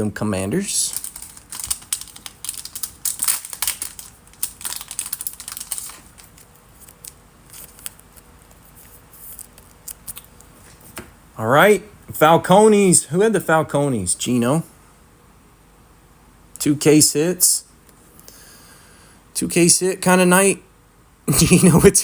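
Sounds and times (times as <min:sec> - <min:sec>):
plastic wrapping crinkling: 0:00.8 - 0:10.5
trading cards clicking: 0:00.9 - 0:08.6.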